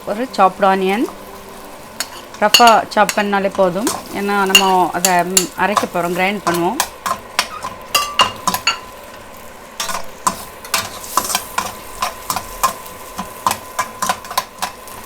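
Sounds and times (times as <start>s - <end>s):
onion sizzling in a pan: 0.0s - 15.0s
utensil knocking and scraping pan: 9.8s - 14.8s.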